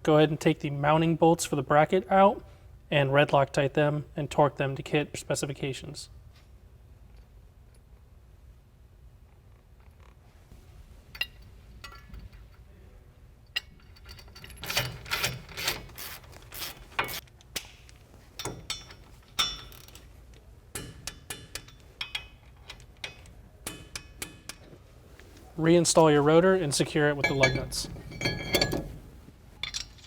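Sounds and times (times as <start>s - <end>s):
hand tools clinking on metal: 25.8s - 30.0s.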